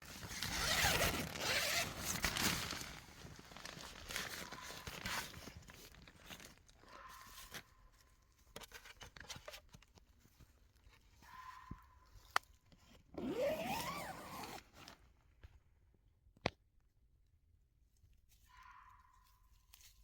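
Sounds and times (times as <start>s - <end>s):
zipper rasping: 0.0s - 2.9s, 13.2s - 14.8s.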